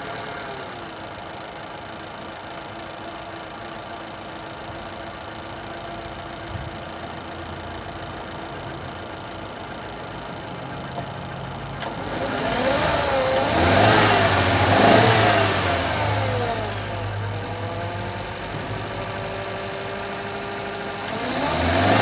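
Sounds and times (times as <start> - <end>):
car engine idling and revving: 0.0 - 22.0.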